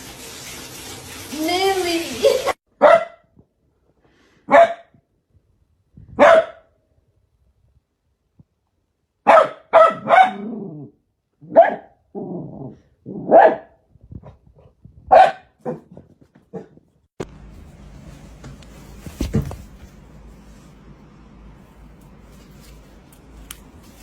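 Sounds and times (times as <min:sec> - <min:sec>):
dog barking: 0:02.8 - 0:03.3, 0:04.5 - 0:05.0, 0:06.2 - 0:06.7, 0:09.2 - 0:10.6, 0:11.4 - 0:12.0, 0:13.2 - 0:13.8, 0:15.1 - 0:16.8
dog growling: 0:12.1 - 0:13.3.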